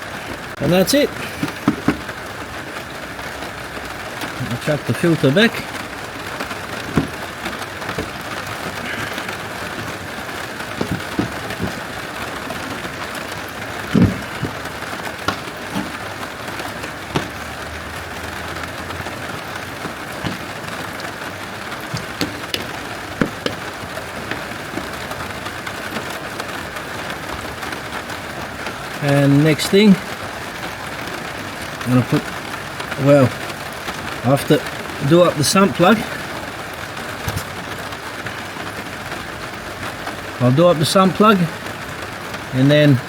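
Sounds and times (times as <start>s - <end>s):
steady rain-like hiss: 0.0s - 43.0s
loud thump: 10.8s - 12.0s, 13.9s - 16.1s, 22.0s - 23.6s
clicks and knocks of parts: 21.8s - 24.9s.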